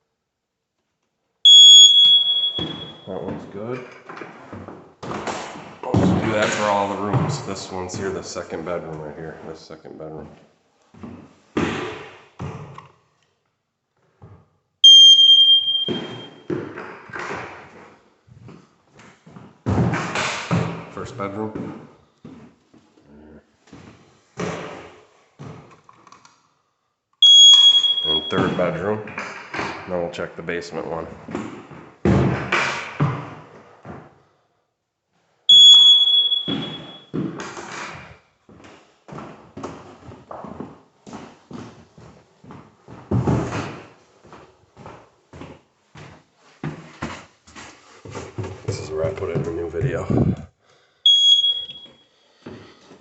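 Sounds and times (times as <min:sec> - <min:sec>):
smoke alarm beep: 0:01.5 - 0:03.2, 0:14.8 - 0:16.5, 0:27.2 - 0:28.8, 0:35.5 - 0:37.1, 0:51.0 - 0:52.1
knocks and rustling handling noise: 0:36.5 - 0:50.5.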